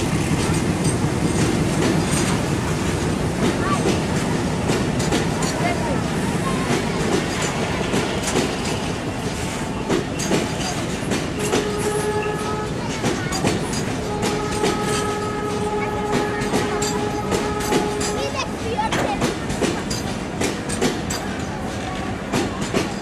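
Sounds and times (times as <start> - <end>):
train wheels clattering over rails: 0.0 - 23.0
steady train horn: 11.4 - 13.2, 13.9 - 18.7.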